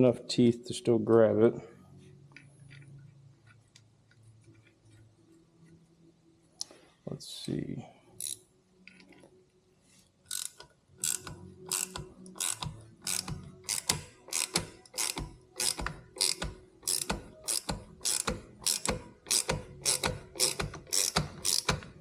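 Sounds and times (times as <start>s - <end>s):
ratchet wrench clicking: 8.2s - 8.4s, 10.3s - 22.0s.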